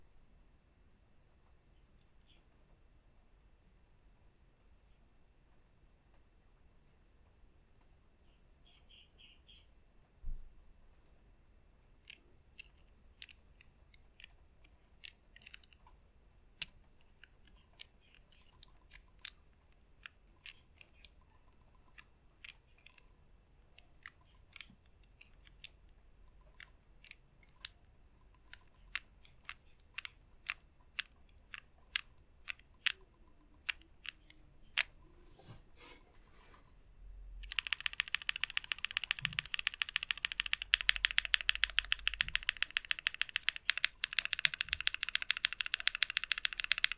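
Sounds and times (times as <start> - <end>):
mechanical keyboard keystrokes: 12.1 - 15.9, 23.8 - 35.1, 37.4 - 46.9.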